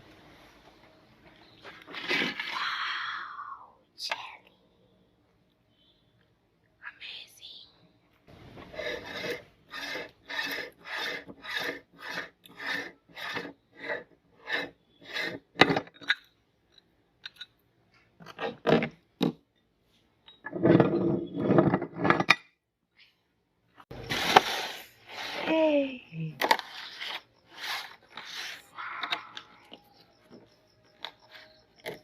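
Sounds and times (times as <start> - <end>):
meat grinder grinding: 8.6 - 15.4.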